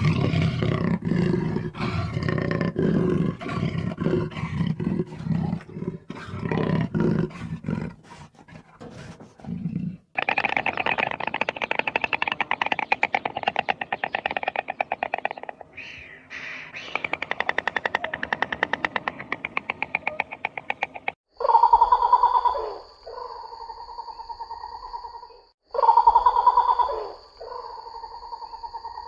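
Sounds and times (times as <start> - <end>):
animal rapid rattling call: 10.2 - 21.8
animal steady pitched call: 10.2 - 24.7, 25.7 - 28.8.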